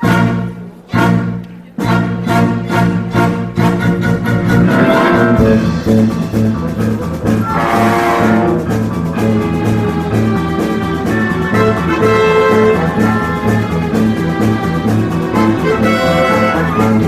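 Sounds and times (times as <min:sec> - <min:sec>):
brass playing tune: 0:00.0 - 0:09.8, 0:11.0 - 0:17.0
orchestra playing overture: 0:00.0 - 0:17.0
pulsing bass beat: 0:03.5 - 0:09.5.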